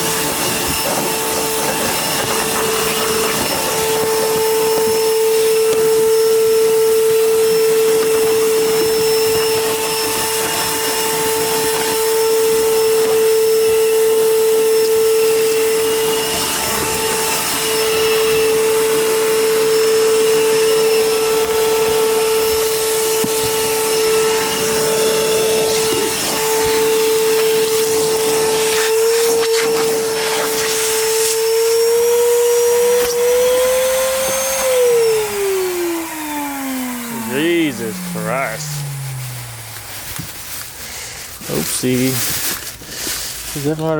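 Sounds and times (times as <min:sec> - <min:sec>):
vacuum cleaner motor whining: 0:00.0 - 0:43.9.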